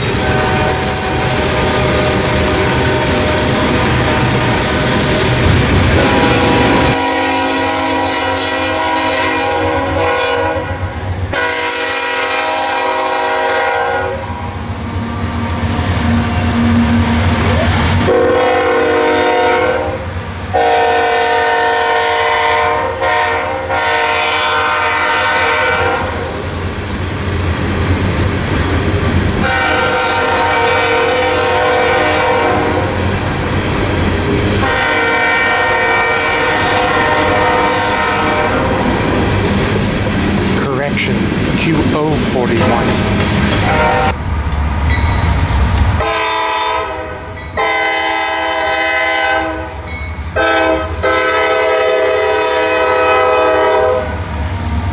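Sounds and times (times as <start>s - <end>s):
locomotive air horn blasts: 0.0s - 3.8s, 4.8s - 14.4s, 15.7s - 26.2s, 29.4s - 33.0s, 34.6s - 38.9s, 43.6s - 44.2s, 46.0s - 49.8s, 50.4s - 54.2s
passing train rumble: 0.0s - 54.9s.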